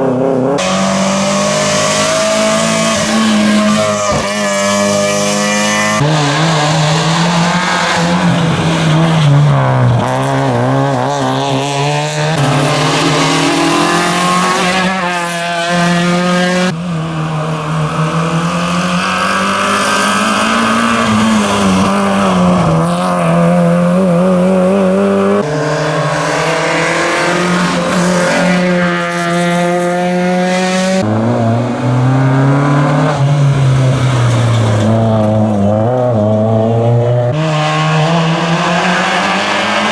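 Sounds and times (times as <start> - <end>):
rally car engines revving: 0.0 - 39.9.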